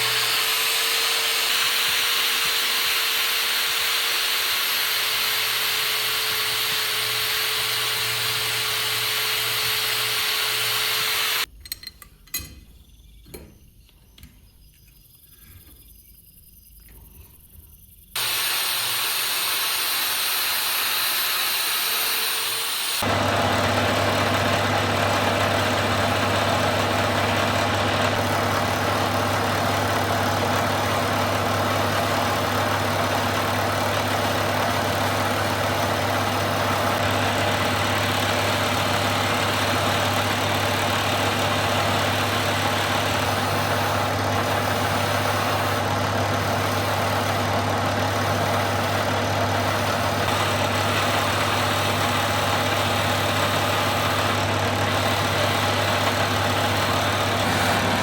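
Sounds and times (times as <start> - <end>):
machine humming: 23.0 - 58.0.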